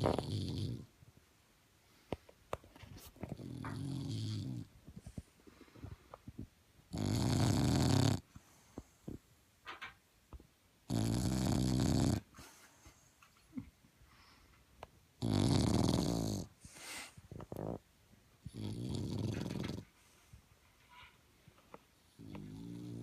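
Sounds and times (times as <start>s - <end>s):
puppy snoring loudly: 0.0s - 0.9s, 3.3s - 4.7s, 6.9s - 8.3s, 10.9s - 12.4s, 15.2s - 16.7s, 17.3s - 17.8s, 18.4s - 20.0s, 22.1s - 23.0s
soft snuffling breaths: 22.1s - 23.0s.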